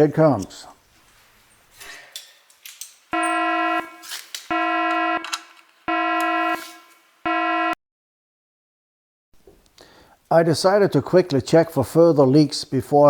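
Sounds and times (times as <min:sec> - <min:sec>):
electronic alarm tones: 0:03.2 - 0:07.8.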